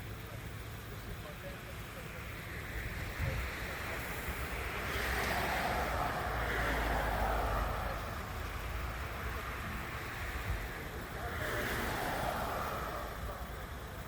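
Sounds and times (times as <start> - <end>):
car tyre noise passing: 1.4 - 14.0.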